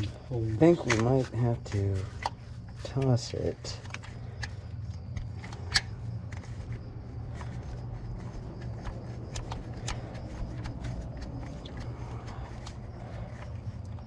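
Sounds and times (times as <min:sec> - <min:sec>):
steady low hum: 0:00.0 - 0:14.0
tools and parts clicking: 0:02.0 - 0:06.6.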